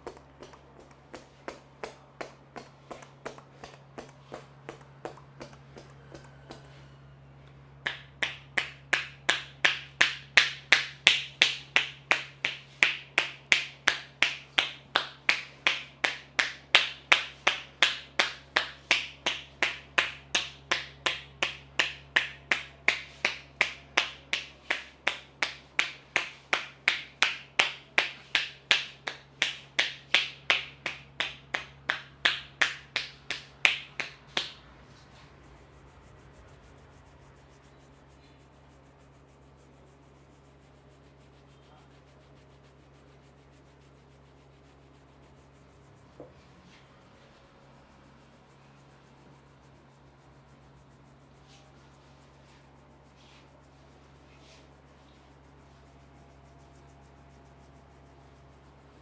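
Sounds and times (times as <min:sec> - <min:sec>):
palms tapping head: 0:00.0 - 0:06.8, 0:07.8 - 0:34.7.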